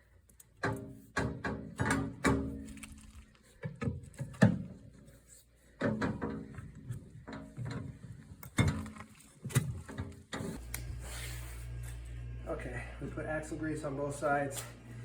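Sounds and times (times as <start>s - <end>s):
steady low hum: 10.6s - 15.0s.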